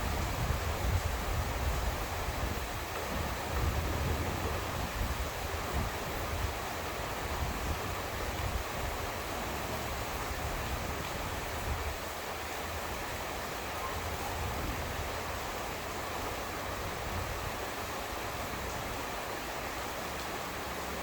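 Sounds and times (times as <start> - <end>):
steady rain: 0.0 - 21.0.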